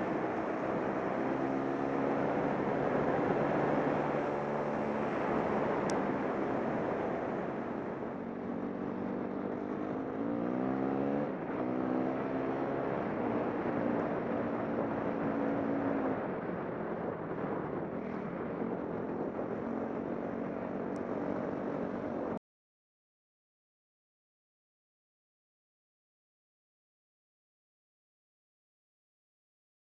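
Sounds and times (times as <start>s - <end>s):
steady rushing noise: 0.0s - 10.4s.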